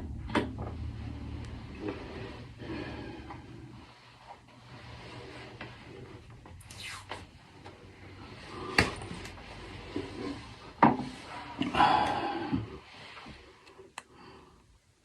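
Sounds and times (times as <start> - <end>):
hand tools fiddling with cables: 0.3 - 12.2.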